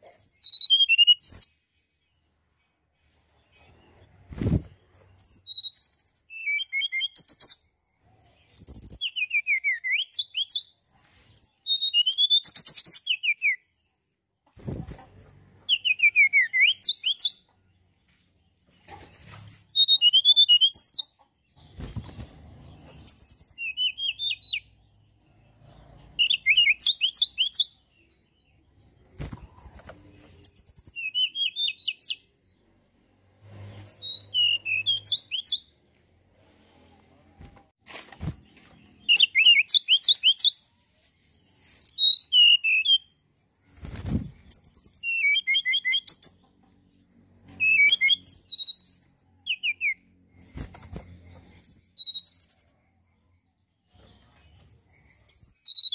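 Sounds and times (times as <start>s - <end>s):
bird whistles and trills: 0.0s - 1.6s, 4.2s - 7.6s, 8.5s - 10.8s, 11.4s - 13.7s, 14.6s - 17.5s, 19.4s - 21.1s, 22.9s - 24.8s, 26.2s - 27.8s, 29.1s - 32.2s, 33.8s - 35.7s, 38.2s - 40.6s, 41.6s - 46.4s, 47.6s - 52.8s, 55.2s - 55.9s.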